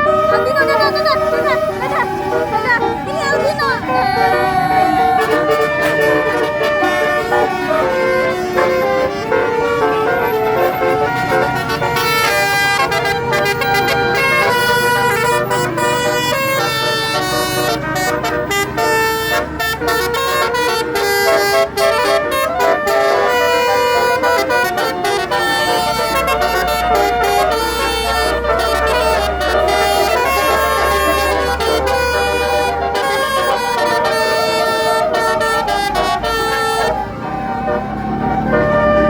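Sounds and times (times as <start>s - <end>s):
musical air horn melody: 0.0s - 39.0s.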